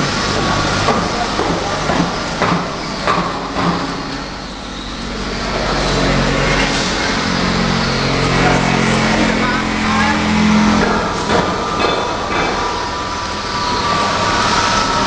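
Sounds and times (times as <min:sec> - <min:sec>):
hydraulic baler running: 0:00.0 - 0:15.0
steady machine hum: 0:00.0 - 0:15.0
sharp knocks: 0:00.4 - 0:04.0.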